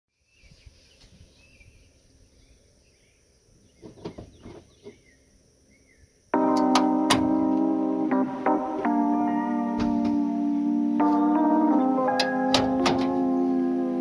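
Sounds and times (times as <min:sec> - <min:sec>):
birds chirping: 0:00.2 - 0:14.0
guitar music: 0:06.4 - 0:14.0.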